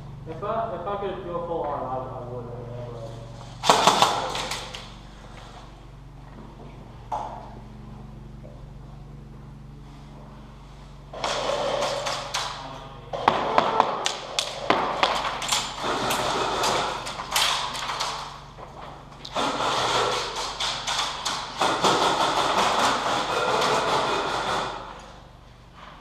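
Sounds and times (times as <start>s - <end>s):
airsoft guns firing: 3.6s - 5.0s, 13.2s - 18.3s, 19.4s - 24.8s.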